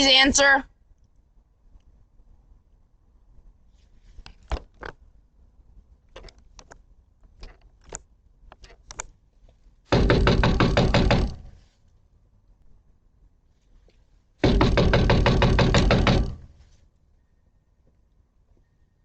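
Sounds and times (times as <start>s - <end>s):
knocking on a door: 9.9s - 11.6s, 14.4s - 16.6s.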